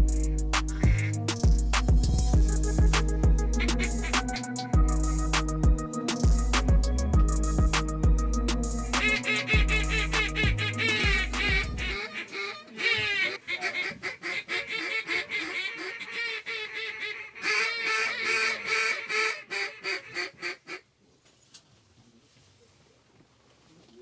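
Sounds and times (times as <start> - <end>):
background music: 0.0 - 12.0
waterfowl honking and quacking: 3.5 - 4.7, 8.9 - 20.8.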